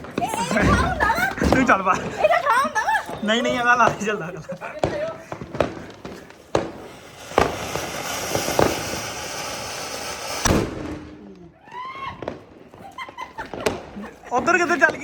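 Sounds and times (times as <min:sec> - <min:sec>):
firecracker bangs: 0:00.0 - 0:04.2, 0:04.8 - 0:11.2
hissing sparks with pops: 0:03.0 - 0:11.0.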